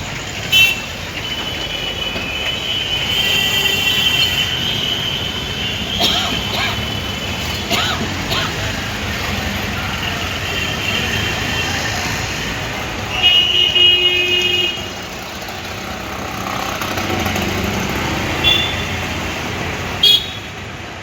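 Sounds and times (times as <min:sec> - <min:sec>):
road traffic noise: 0:00.0 - 0:21.0
vehicle horn honking: 0:00.5 - 0:06.0, 0:13.2 - 0:14.8, 0:18.4 - 0:19.2, 0:20.0 - 0:20.6.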